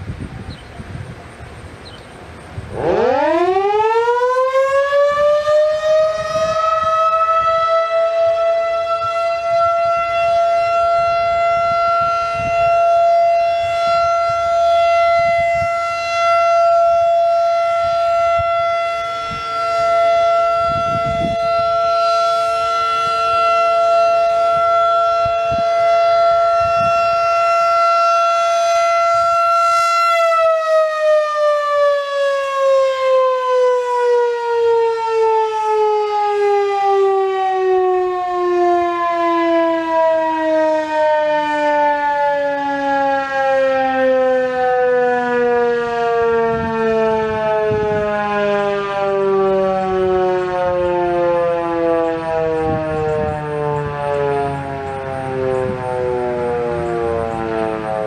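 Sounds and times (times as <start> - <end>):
warning siren winding down: 0.0 - 58.0.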